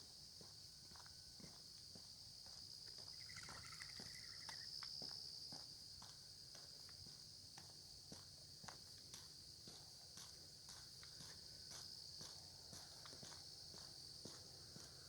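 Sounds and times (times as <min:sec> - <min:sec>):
crickets chorus: 0:00.0 - 0:15.0
footsteps on lane: 0:06.0 - 0:15.0.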